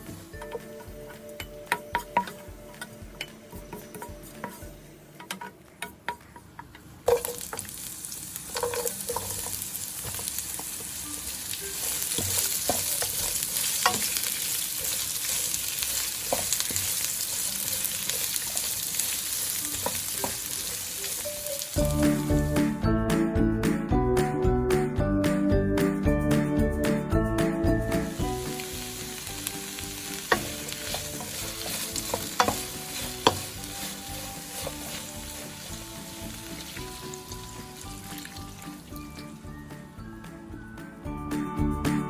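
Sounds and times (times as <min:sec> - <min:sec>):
food sizzling in oil: 0:07.1 - 0:22.8, 0:27.8 - 0:40.2
utensil clicking in pan: 0:29.4 - 0:35.5.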